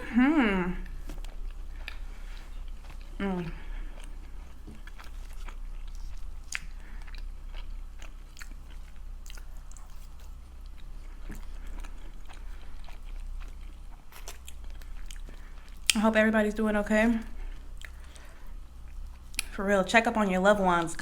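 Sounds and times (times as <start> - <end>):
steady low hum: 0.0 - 21.0
chewing and biting: 0.8 - 16.0.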